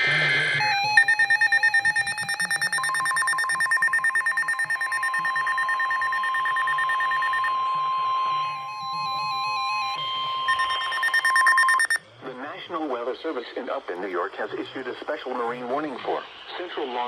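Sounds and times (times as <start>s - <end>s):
electronic attention tone: 0.6s - 12.0s
steady single tone: 0.6s - 12.0s.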